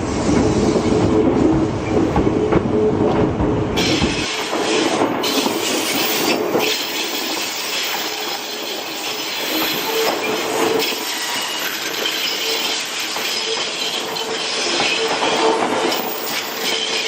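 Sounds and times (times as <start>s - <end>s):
railcars running over rails: 0.0s - 17.0s
train wheels squealing: 3.8s - 17.0s.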